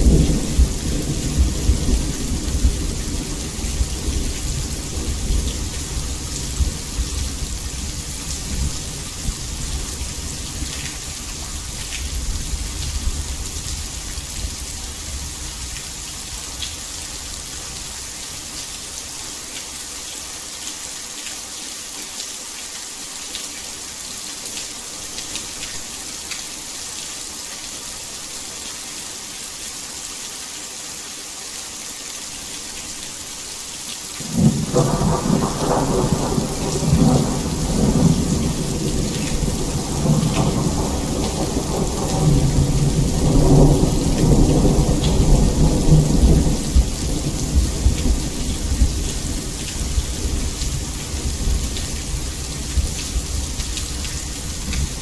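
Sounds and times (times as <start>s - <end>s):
heavy rain falling: 0.0s - 55.0s
low thunder rumble: 34.2s - 55.0s.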